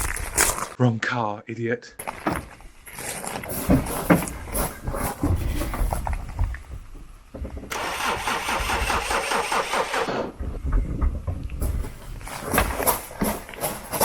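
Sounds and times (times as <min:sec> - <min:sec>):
car engine cranking: 0:07.7 - 0:10.4.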